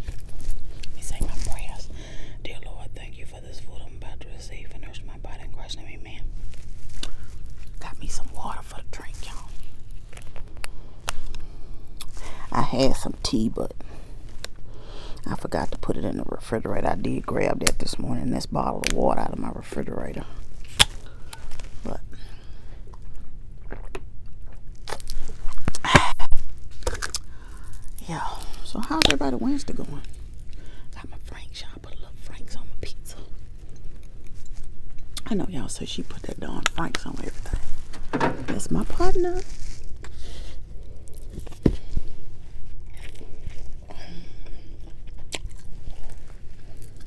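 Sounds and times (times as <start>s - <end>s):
person crunching pizza: 6.4s - 7.7s, 22.4s - 27.7s, 39.3s - 41.0s, 41.8s - 46.8s.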